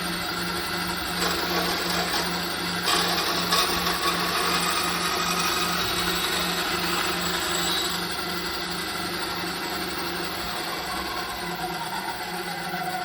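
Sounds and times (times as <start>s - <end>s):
bandsaw cutting wood: 1.0s - 8.1s.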